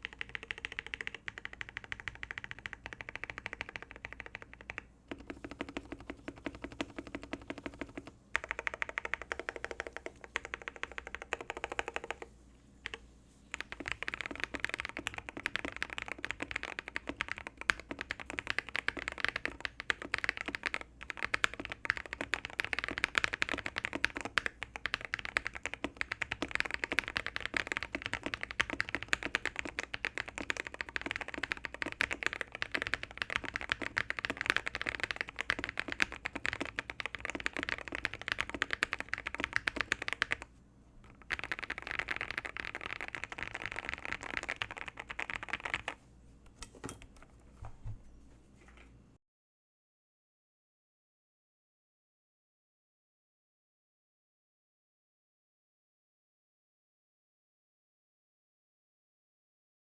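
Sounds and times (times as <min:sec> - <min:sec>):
typing on mechanical keyboards: 0:00.0 - 0:46.0.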